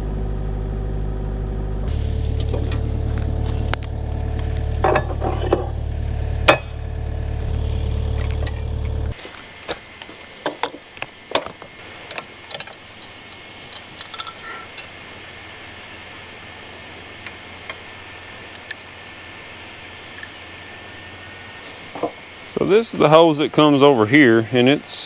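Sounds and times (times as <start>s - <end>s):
diesel engine idling: 0.0s - 25.0s
light metallic clicks and clinks: 11.4s - 15.0s.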